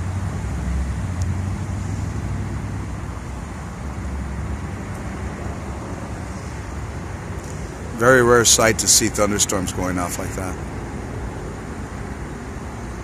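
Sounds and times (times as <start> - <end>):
city traffic rumble: 0.0 - 13.0.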